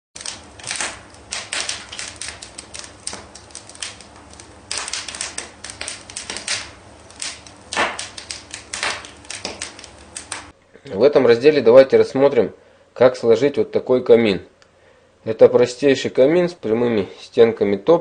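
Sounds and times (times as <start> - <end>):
rapid clicking and tapping: 0.2 - 10.5.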